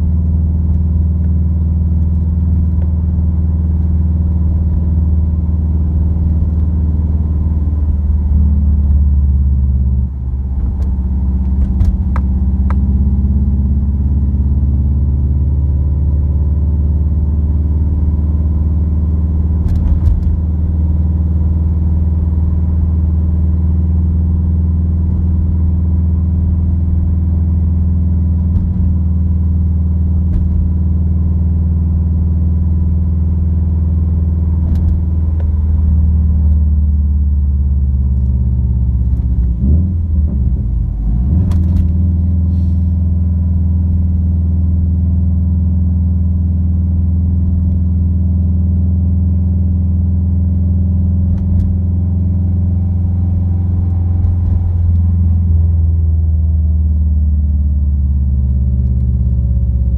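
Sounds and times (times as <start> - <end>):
car exhaust drone: 0.0 - 59.9
knocks from road bumps: 10.6 - 12.8.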